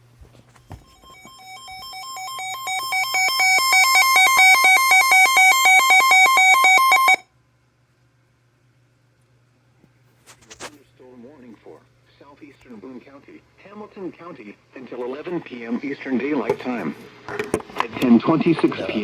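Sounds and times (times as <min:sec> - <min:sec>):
warbling electronic alarm: 0:00.8 - 0:07.2.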